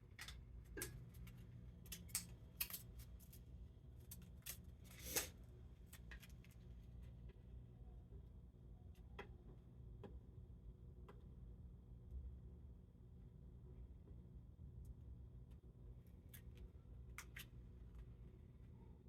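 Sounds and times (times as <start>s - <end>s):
low steady hum: 0.0s - 19.0s
small parts clicking and rustling: 0.1s - 7.1s.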